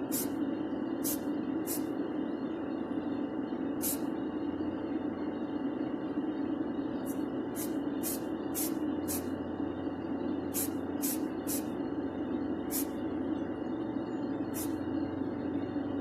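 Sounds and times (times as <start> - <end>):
paint spray hissing bursts: 0.0 - 0.4, 1.0 - 1.9, 3.8 - 4.1, 7.1 - 9.3, 10.5 - 11.7, 12.7 - 13.0, 14.6 - 14.8
low machine hum: 0.0 - 16.0.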